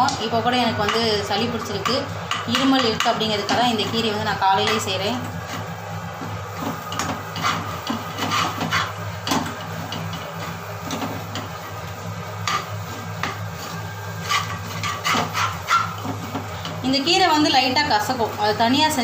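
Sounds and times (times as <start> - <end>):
steady low hum: 0.0 - 19.0
spatula scraping frying pan: 0.8 - 17.0.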